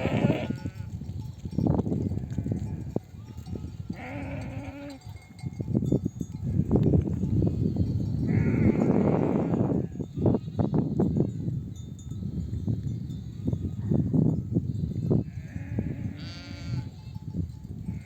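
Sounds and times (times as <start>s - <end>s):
sheep bleating: 0.0s - 0.9s, 2.2s - 5.0s, 8.3s - 10.6s, 15.3s - 17.2s.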